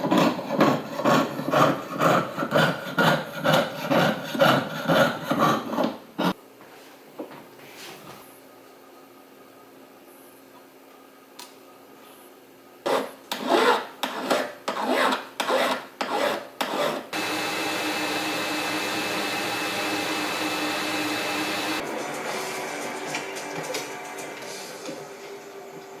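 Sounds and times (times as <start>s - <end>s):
hand file rasping metal: 0.0s - 6.4s, 12.9s - 21.8s
click: 11.4s - 11.6s
machine whirring: 17.1s - 25.0s.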